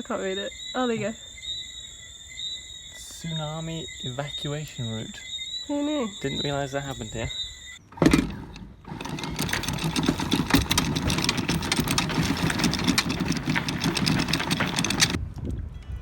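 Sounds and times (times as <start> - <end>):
wind: 0.0 - 16.0
outboard motor running: 7.9 - 15.2.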